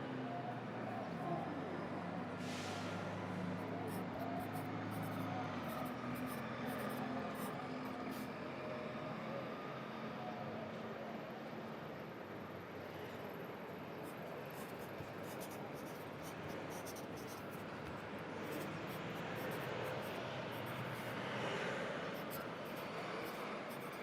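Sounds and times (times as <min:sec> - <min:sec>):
city traffic hum: 0:00.0 - 0:09.4, 0:12.2 - 0:24.0
pencil writing on paper: 0:03.6 - 0:08.2, 0:14.0 - 0:21.4, 0:22.0 - 0:24.0.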